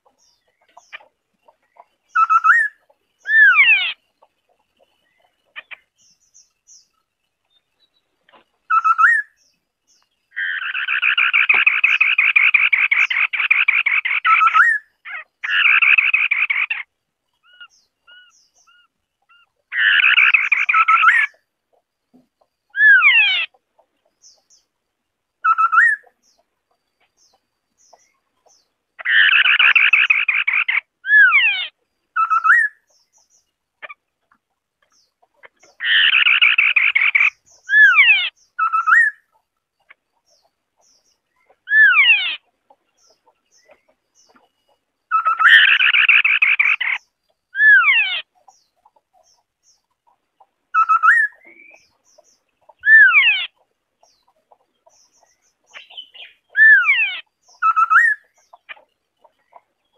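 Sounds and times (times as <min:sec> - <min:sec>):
bird harsh chattering: 0:10.3 - 0:21.4, 0:28.0 - 0:32.9, 0:35.3 - 0:44.5, 0:45.1 - 0:47.0, 0:47.6 - 0:48.6, 0:50.8 - 0:58.9.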